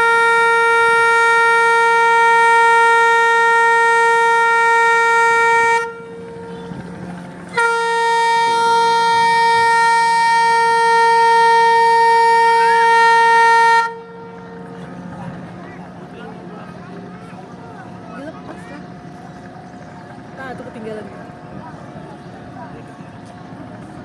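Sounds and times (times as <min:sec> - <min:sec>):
ship's horn long blasts: 0:00.0 - 0:14.8.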